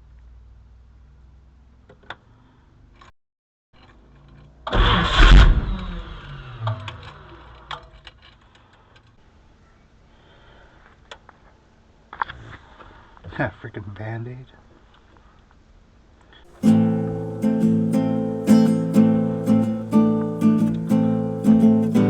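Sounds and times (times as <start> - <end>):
car engine firing up and winding down: 4.6 - 7.7.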